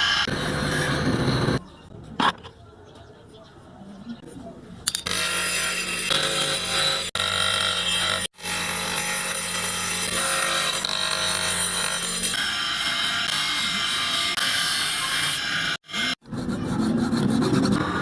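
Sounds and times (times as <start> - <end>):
power tool grinding: 0.0 - 1.6, 4.9 - 16.2.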